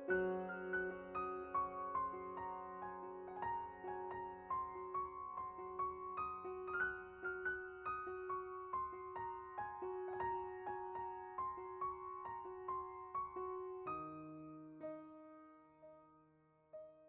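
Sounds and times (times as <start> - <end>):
soft piano melody: 0.0 - 17.0.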